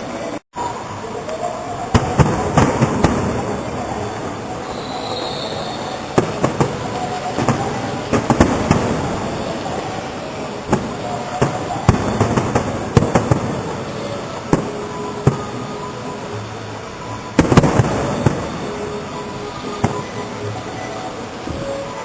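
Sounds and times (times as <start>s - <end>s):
fireworks bangs and crackles: 1.9s - 4.1s, 5.6s - 15.5s, 17.4s - 20.2s
fireworks exploding: 1.9s - 15.9s, 17.3s - 20.7s.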